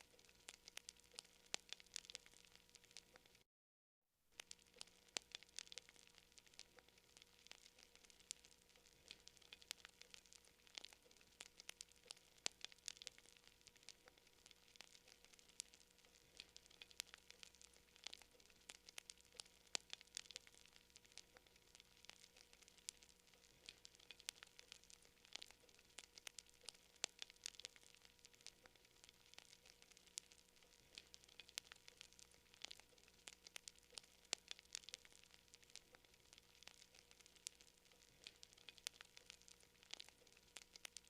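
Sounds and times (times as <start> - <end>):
campfire crackling and popping: 0.0 - 3.4, 4.4 - 41.0
soft fire hiss: 0.0 - 3.4, 4.3 - 41.0.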